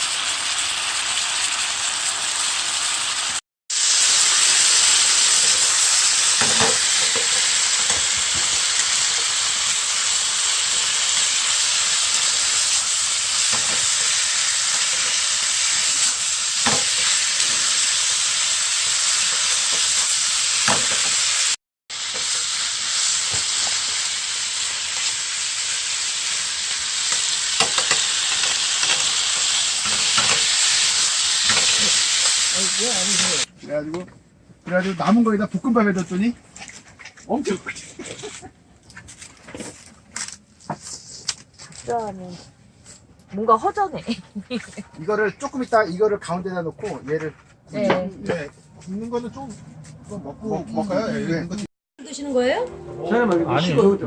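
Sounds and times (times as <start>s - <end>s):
food sizzling in a pan: 0.0s - 33.5s.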